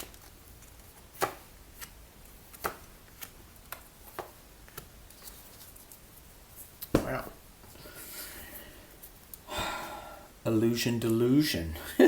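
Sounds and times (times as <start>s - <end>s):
cards being shuffled: 0.0s - 7.3s.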